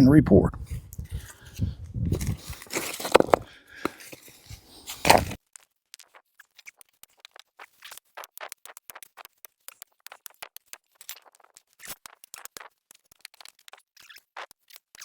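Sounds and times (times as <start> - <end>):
concrete chunks scraping and rattling: 1.0 - 5.4.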